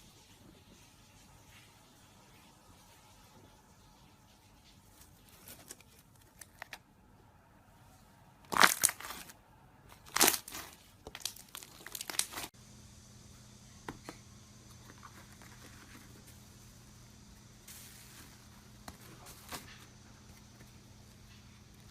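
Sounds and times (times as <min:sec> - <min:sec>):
crunchy slime crackling: 0:08.4 - 0:12.6.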